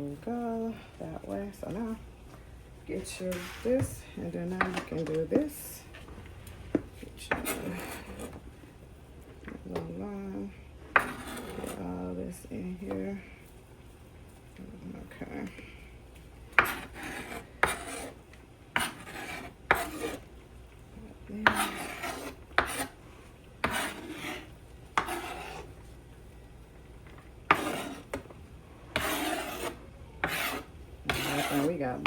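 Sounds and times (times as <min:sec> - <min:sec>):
utensil scraping chicken: 0:11.0 - 0:11.9, 0:16.6 - 0:18.2, 0:18.8 - 0:20.3, 0:21.4 - 0:23.0, 0:23.6 - 0:25.9, 0:27.5 - 0:28.3, 0:28.9 - 0:32.0.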